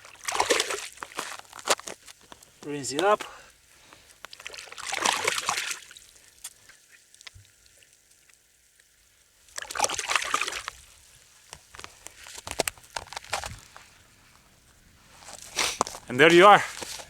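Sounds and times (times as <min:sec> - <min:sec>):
water splashing over fish: 0:00.0 - 0:02.0, 0:03.0 - 0:11.6
small clicks and knocks: 0:11.5 - 0:13.6.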